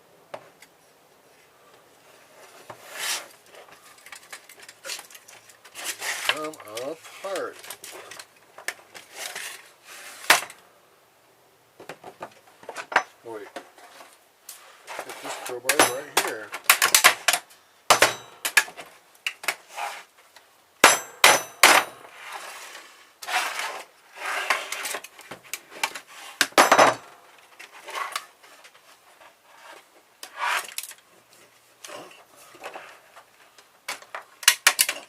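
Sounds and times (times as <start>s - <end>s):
crowbar clanking on metal: 15.7s - 16.4s.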